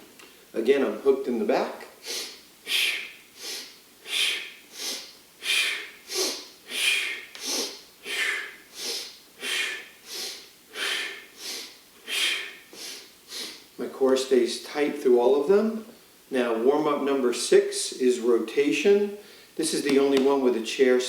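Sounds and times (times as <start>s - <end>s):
man breathing hard: 2.0s - 13.6s.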